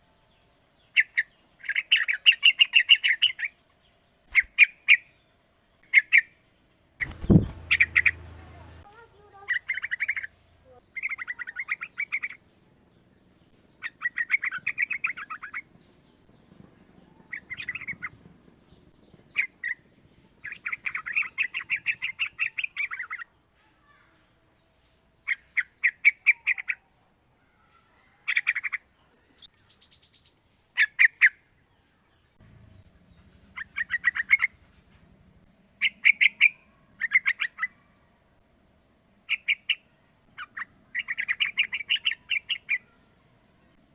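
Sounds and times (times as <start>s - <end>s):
bird chattering calls: 7.0s - 12.4s, 13.8s - 15.7s, 17.2s - 18.2s, 19.3s - 23.3s, 33.2s - 34.6s, 35.8s - 37.8s, 39.3s - 43.0s.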